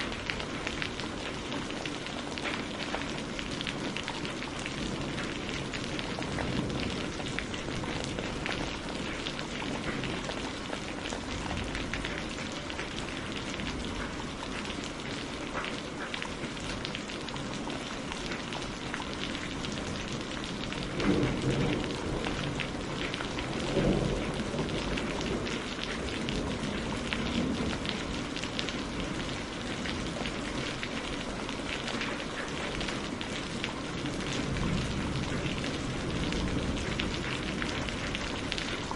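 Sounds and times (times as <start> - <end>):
heavy rain: 0.0 - 38.9
low thunder rumbles: 3.7 - 14.0, 19.4 - 31.1, 32.8 - 38.9.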